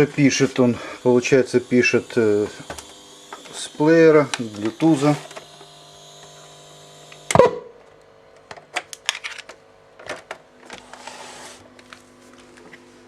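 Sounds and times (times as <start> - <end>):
faint steady hum: 0.0 - 13.0
loud knock with short ring: 7.3 - 7.7.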